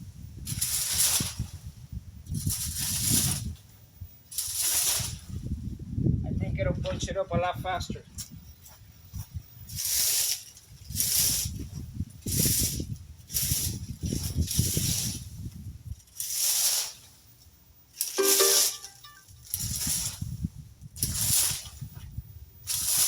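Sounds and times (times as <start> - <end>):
wind on microphone: 0.0 - 3.7, 4.8 - 10.0, 10.7 - 16.0, 19.4 - 23.0
rake scraping leaves: 0.4 - 3.7, 4.3 - 5.5, 9.7 - 20.4, 21.0 - 21.9, 22.6 - 23.0
rake tines squealing: 4.3 - 5.2.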